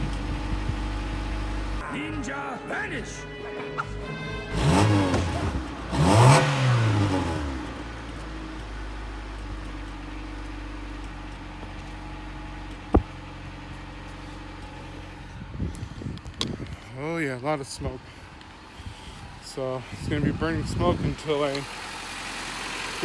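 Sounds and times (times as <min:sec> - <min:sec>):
car engine revving and idling: 0:00.0 - 0:01.8, 0:04.5 - 0:15.8, 0:21.1 - 0:23.0.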